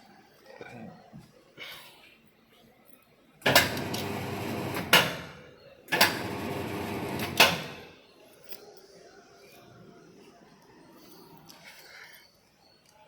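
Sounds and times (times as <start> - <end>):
construction machine running: 3.5 - 7.9.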